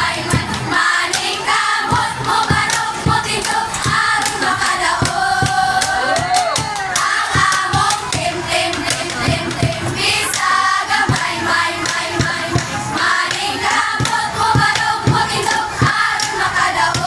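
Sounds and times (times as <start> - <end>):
dance music with singing: 0.0 - 17.0.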